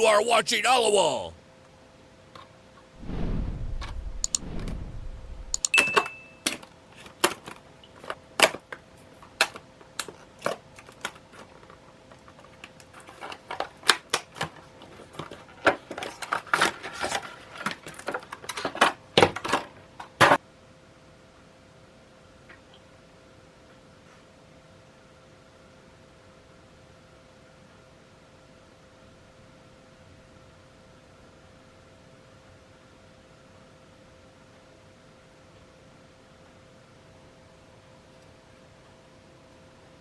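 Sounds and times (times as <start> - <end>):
low rumble: 3.0 - 5.6.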